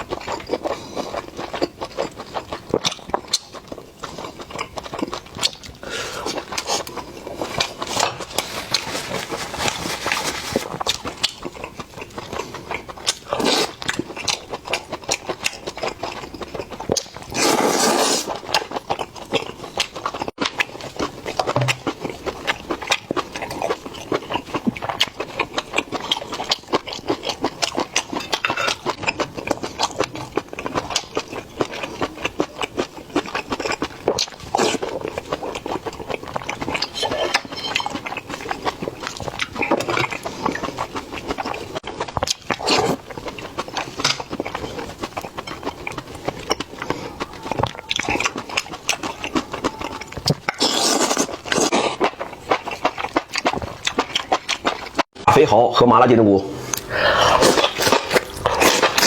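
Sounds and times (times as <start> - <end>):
wet chewing: 0.0 - 55.1, 56.5 - 59.0
mouth slurping: 17.3 - 18.4, 56.5 - 59.0
lip-smacking and sucking clicks: 56.6 - 59.0.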